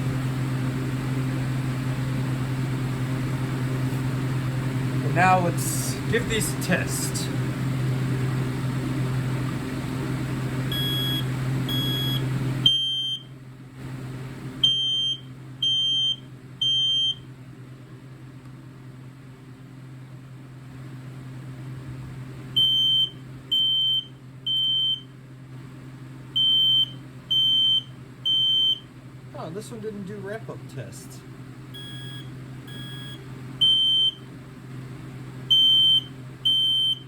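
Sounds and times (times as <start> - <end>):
low steady hum: 1.4 - 13.2, 26.3 - 37.0
smoke alarm shrill beeps: 10.7 - 13.3, 14.6 - 17.2, 22.6 - 25.0, 26.4 - 28.8, 31.8 - 34.2, 35.5 - 37.0.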